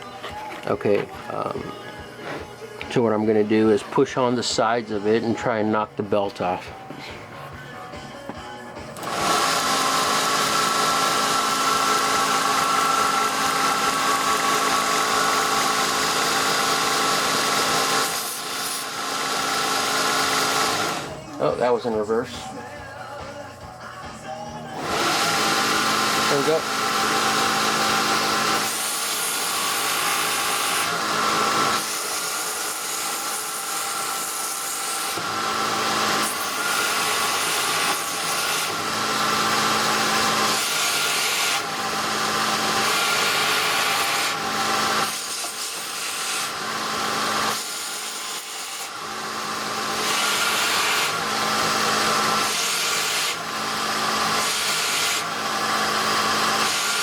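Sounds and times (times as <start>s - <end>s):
belt grinder motor whine: 9.0s - 21.3s, 24.8s - 57.0s.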